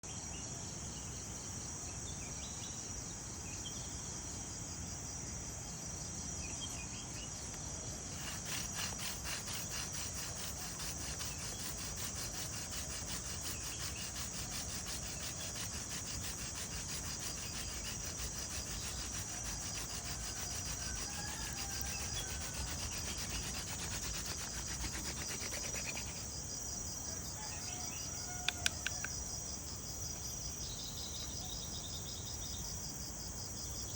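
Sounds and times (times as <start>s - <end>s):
crickets chirping: 0.0s - 33.9s
wooden spindle rubbing on board: 8.0s - 26.3s
sharp clicks: 28.5s - 29.2s.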